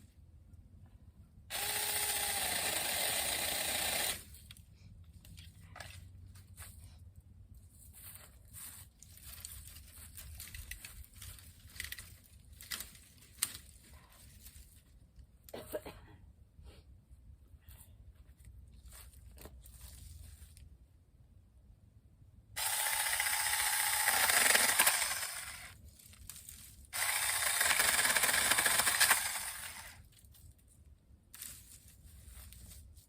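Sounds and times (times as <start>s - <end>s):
electric chainsaw whining: 1.5s - 4.3s, 22.6s - 25.8s, 27.0s - 30.0s
light clicks and crackles: 9.0s - 15.3s.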